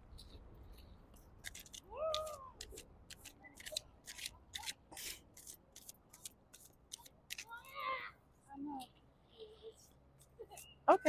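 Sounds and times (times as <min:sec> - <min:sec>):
cards being shuffled: 0:01.4 - 0:07.6.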